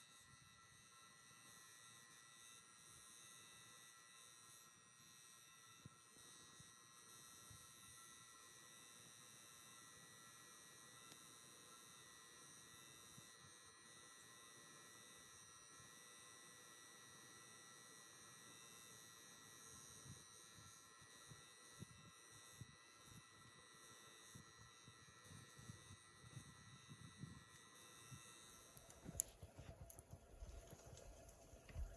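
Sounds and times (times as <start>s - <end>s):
faint hum and hiss: 0.0s - 31.9s
soft low thumps: 29.0s - 31.9s.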